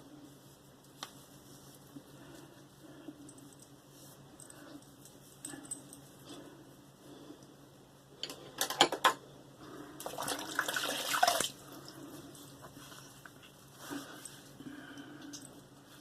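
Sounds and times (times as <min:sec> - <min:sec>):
water splashing at a sink: 0:10.0 - 0:11.6.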